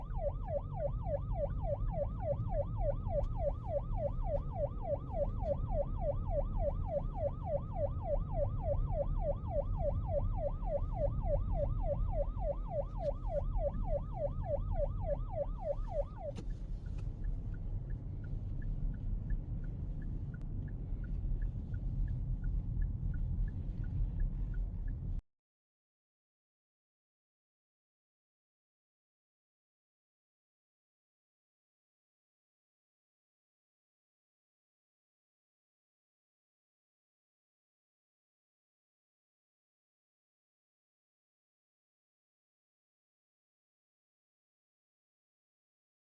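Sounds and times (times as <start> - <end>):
siren yelping: 0.0 - 16.6
steady low rumble: 0.0 - 25.2.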